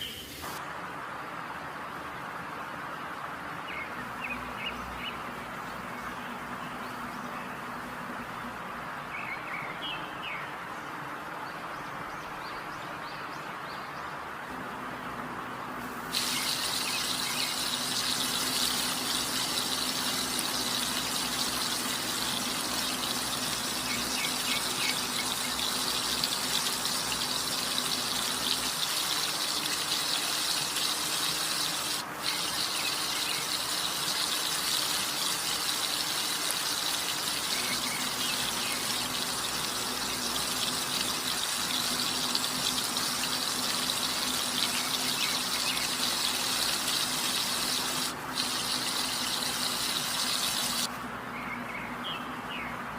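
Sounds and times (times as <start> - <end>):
chicken deep-frying in oil: 15.9 - 51.0.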